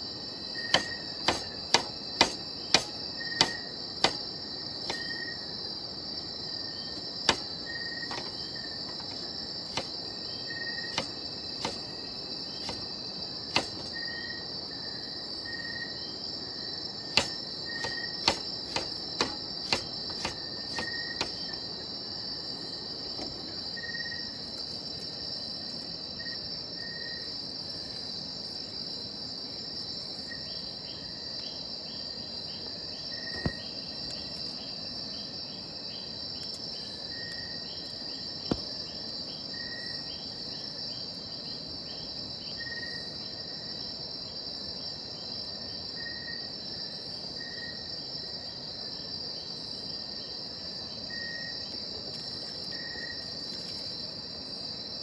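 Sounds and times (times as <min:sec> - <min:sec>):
high-pitched insect chorus: 0:00.0 - 0:55.0.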